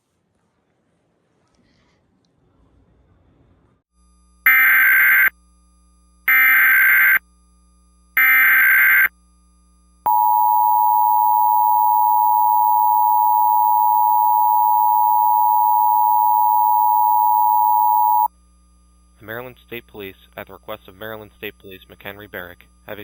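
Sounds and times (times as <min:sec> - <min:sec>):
buzzing digital data tones: 0:04.5 - 0:05.4, 0:06.3 - 0:07.2, 0:08.2 - 0:09.2, 0:10.1 - 0:18.3
two-tone attention signal: 0:10.1 - 0:18.3.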